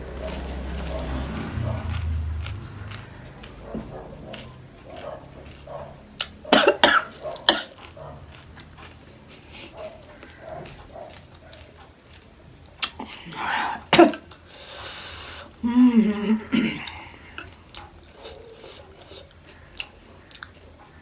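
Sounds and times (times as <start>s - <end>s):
quiet chewing: 0.0s - 21.0s
woman coughing: 6.5s - 7.8s, 13.4s - 14.3s, 15.6s - 17.0s.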